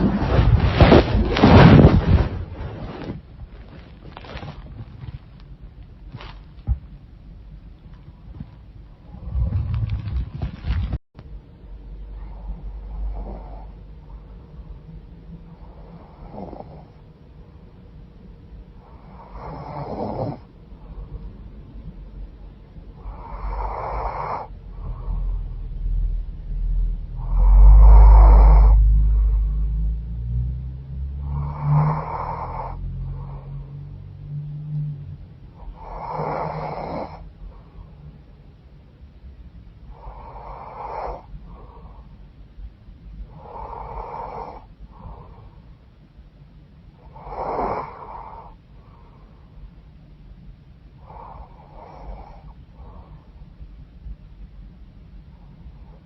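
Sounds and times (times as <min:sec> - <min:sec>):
low rumble: 0:00.0 - 0:19.4, 0:20.4 - 0:23.8, 0:24.4 - 0:36.0
soft breath sound: 0:11.9 - 0:17.6, 0:18.6 - 0:34.7, 0:35.4 - 0:38.6, 0:39.8 - 0:46.2, 0:46.9 - 0:50.1, 0:50.8 - 0:56.0
woman snoring: 0:15.9 - 0:16.9, 0:19.0 - 0:20.5, 0:27.2 - 0:29.5, 0:31.1 - 0:33.8, 0:35.6 - 0:37.2, 0:47.1 - 0:48.6.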